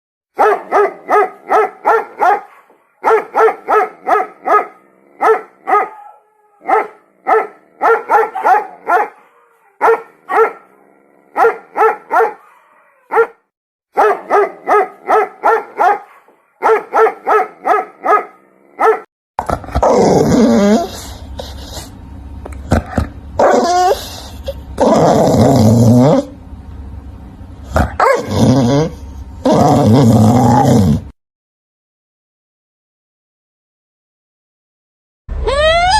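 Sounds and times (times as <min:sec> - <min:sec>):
dog barking: 0:00.4 - 0:19.1, 0:27.8 - 0:28.8
dog growling and snarling: 0:19.4 - 0:26.4, 0:27.6 - 0:31.2.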